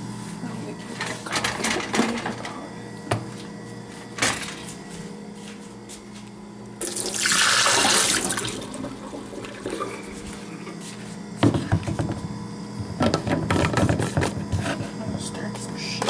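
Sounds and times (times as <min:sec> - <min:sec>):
tap water filling pot: 0:06.8 - 0:10.1.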